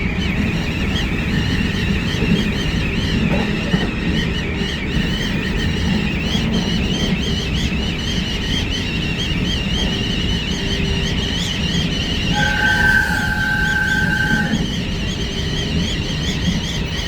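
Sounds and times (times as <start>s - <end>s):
train interior rumble: 0.0s - 17.0s
high-pitched wavering squeal: 12.2s - 14.8s.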